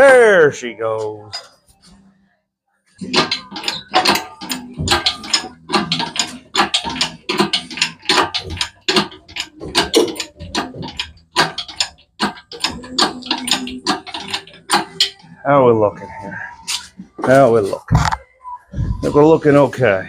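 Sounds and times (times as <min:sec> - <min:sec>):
hoist clicking and ratcheting: 0:03.0 - 0:15.4.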